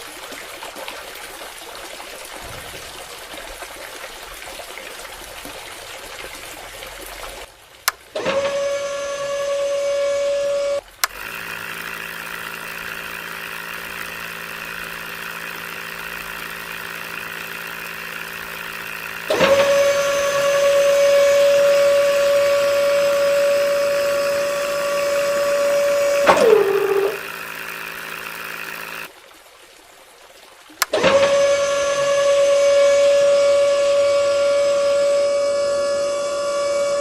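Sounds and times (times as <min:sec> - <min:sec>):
small motors whining: 0:07.9 - 0:29.1, 0:30.8 - 0:37.0
louder motor running: 0:08.2 - 0:29.1, 0:30.9 - 0:37.0.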